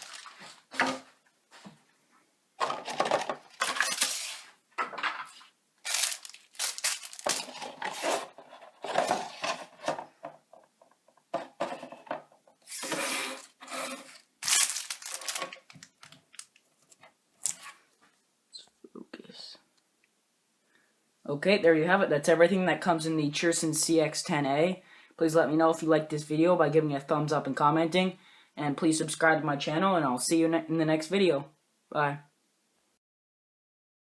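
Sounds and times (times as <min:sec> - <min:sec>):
items clattering: 0:00.0 - 0:01.2, 0:02.6 - 0:17.6
plastic packaging rustling: 0:00.0 - 0:01.2, 0:02.6 - 0:04.6, 0:05.2 - 0:10.3, 0:12.6 - 0:17.9.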